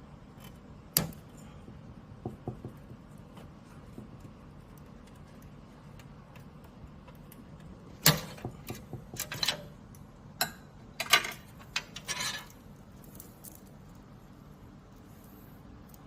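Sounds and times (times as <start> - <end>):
clicks and rattling scrapes: 8.0 - 9.8, 11.0 - 13.7.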